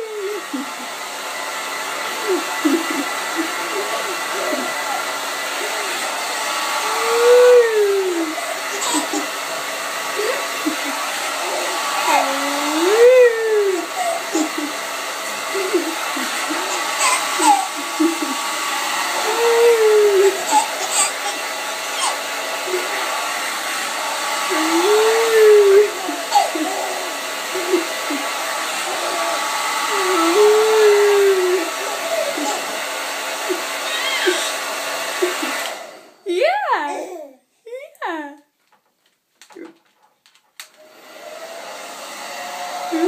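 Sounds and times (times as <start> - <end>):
hair dryer humming: 0.0 - 36.8, 40.6 - 43.0
baby laughing: 2.0 - 23.4, 24.4 - 35.7
baby squealing: 6.8 - 9.4, 10.3 - 14.8, 15.6 - 18.4, 19.1 - 23.0, 24.5 - 29.3, 29.9 - 32.8, 33.5 - 34.6.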